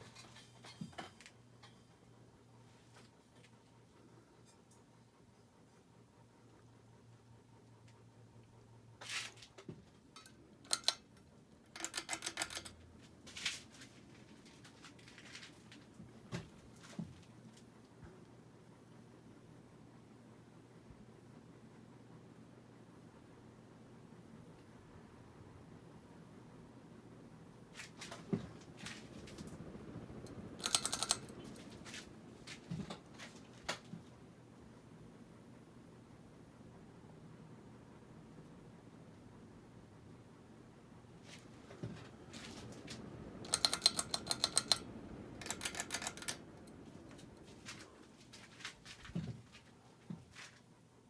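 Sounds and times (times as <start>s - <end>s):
faint low hum: 0.0s - 51.0s
sharp clicks: 11.7s - 12.8s, 29.1s - 32.0s, 42.5s - 47.8s
rattling ticks: 28.6s - 32.1s, 42.3s - 47.8s.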